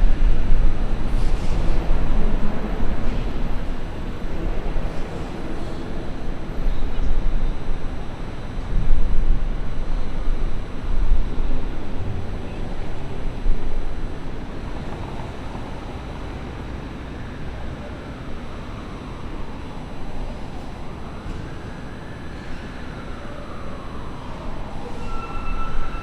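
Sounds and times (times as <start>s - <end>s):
distant traffic: 9.5s - 26.0s
passing vehicles rumbling: 10.6s - 25.0s.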